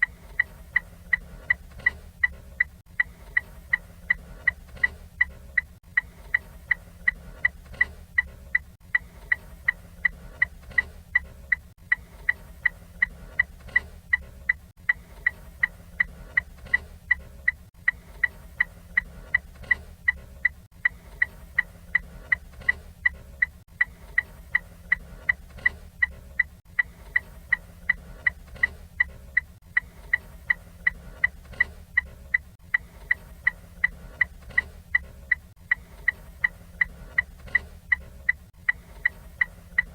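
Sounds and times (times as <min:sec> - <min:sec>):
turn signal ticking: 0:00.0 - 0:39.9.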